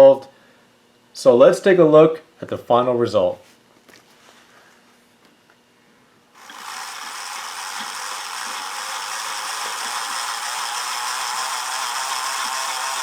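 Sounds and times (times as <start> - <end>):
model train motor whirring and rattling: 6.4 - 13.0.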